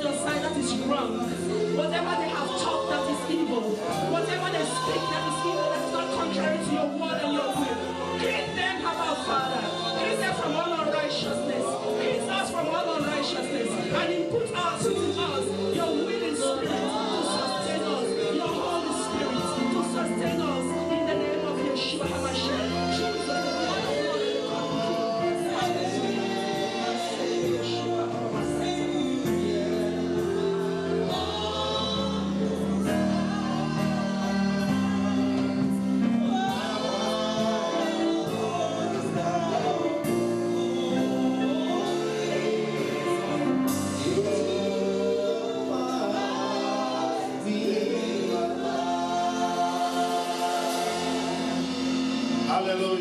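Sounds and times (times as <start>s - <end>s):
gospel choir singing: 0.0s - 53.0s.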